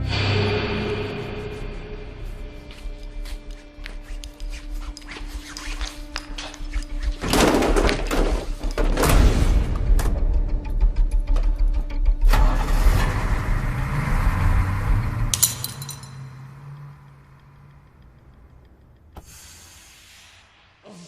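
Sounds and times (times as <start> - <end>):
bus engine pulling away: 12.3 - 19.2.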